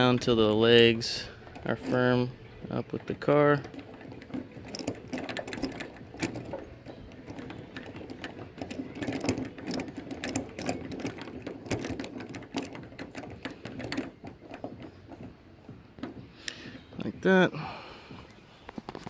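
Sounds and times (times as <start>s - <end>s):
dent puller clicking and rubbing: 0.0s - 17.0s.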